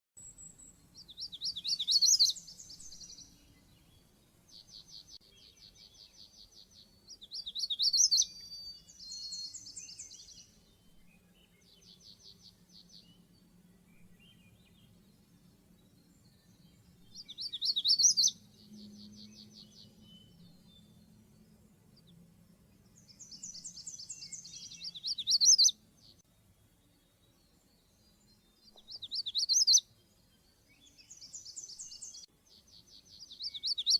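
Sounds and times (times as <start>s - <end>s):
quiet bird trills: 0.2s - 3.7s, 4.5s - 13.0s, 16.1s - 22.1s, 22.9s - 26.2s, 28.1s - 29.9s, 30.7s - 33.9s
warbler singing: 0.2s - 33.9s.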